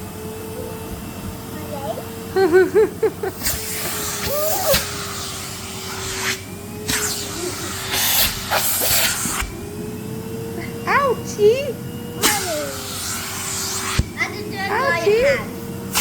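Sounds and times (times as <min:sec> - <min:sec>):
vacuum cleaner motor whine: 0:00.0 - 0:16.0
hissing air bursts: 0:03.3 - 0:09.5, 0:12.2 - 0:14.4.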